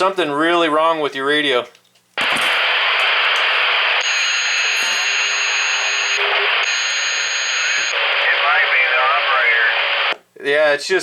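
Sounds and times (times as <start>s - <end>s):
radio hiss and distortion: 2.2s - 10.2s
high steady whistle: 3.8s - 8.4s.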